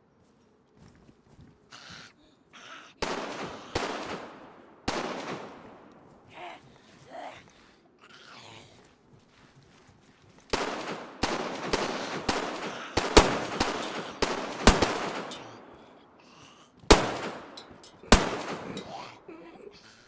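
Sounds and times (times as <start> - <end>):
pistol shots with echo: 3.0 - 6.1, 10.5 - 16.0, 16.9 - 19.3.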